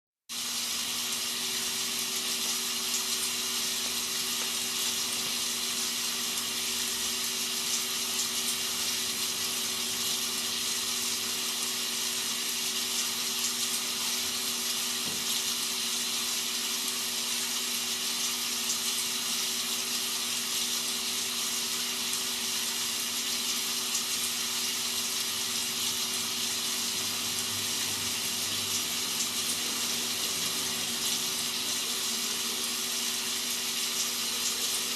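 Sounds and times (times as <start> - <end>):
steady rain hiss: 24.8 - 34.9.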